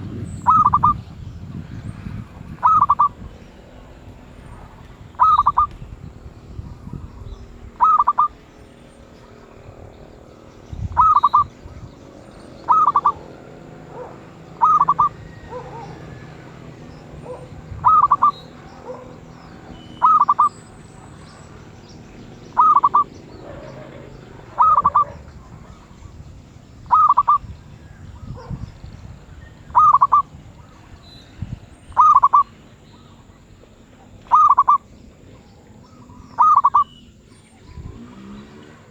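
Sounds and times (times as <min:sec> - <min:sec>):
dove cooing: 0:00.0 - 0:01.0, 0:02.5 - 0:05.8, 0:07.7 - 0:08.4, 0:10.9 - 0:26.2, 0:26.8 - 0:27.5, 0:29.7 - 0:30.3, 0:31.9 - 0:32.4, 0:34.3 - 0:34.8, 0:35.9 - 0:36.9.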